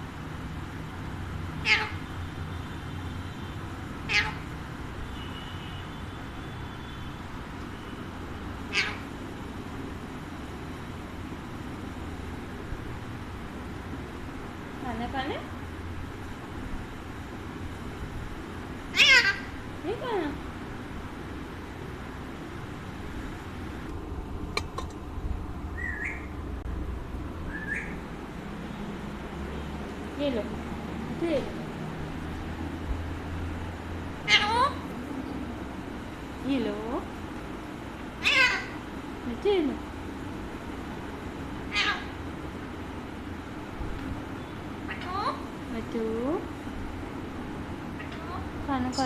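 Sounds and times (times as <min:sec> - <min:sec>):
parakeet calls: 0:01.4 - 0:02.4, 0:04.0 - 0:04.6, 0:08.6 - 0:09.3, 0:18.9 - 0:19.6, 0:25.8 - 0:26.4, 0:27.5 - 0:28.0, 0:34.1 - 0:35.6, 0:38.1 - 0:38.9, 0:41.7 - 0:42.3, 0:44.4 - 0:45.6, 0:47.9 - 0:49.0.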